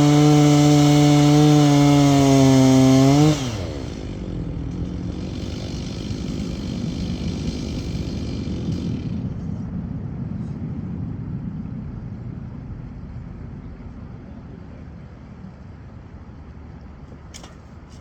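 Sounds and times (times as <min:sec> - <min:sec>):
chainsaw idling: 0:00.0 - 0:09.6.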